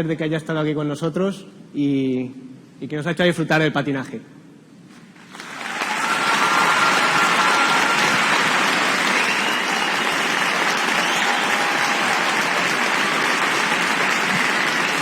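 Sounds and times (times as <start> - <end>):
crowd applauding: 5.3 - 15.0.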